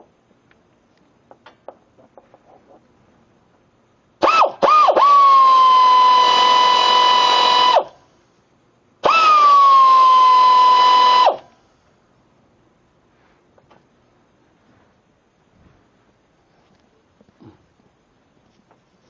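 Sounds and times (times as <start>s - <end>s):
air ratchet whining: 4.2s - 7.9s, 9.0s - 11.5s.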